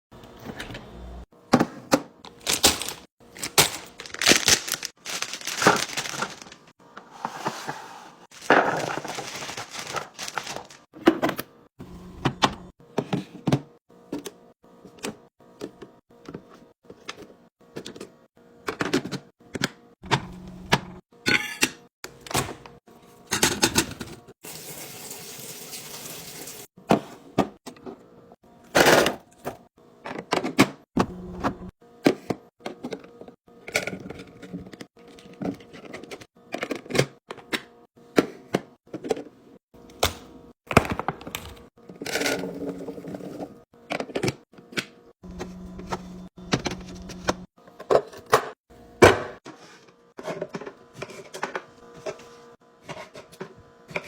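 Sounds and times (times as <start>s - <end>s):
food packages clicking and knocking: 1.5s - 7.7s, 8.3s - 11.5s, 32.1s - 52.2s
packages rustling and sliding: 2.2s - 11.0s.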